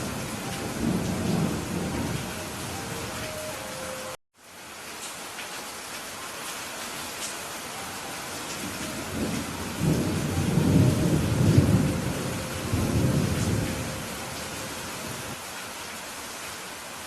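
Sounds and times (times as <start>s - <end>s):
thunder rumbling: 0.0s - 3.2s, 8.5s - 15.4s
steady rain hiss: 0.0s - 17.0s.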